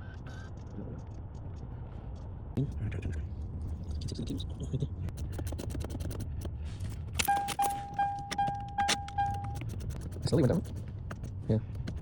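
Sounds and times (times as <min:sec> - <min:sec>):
electronic warning beeps: 0:07.2 - 0:09.7.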